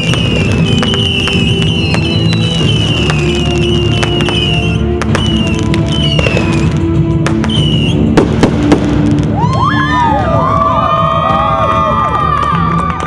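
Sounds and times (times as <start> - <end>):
whistling fireworks screaming: 0.0 - 10.2
fireworks bangs and crackles: 0.0 - 10.3.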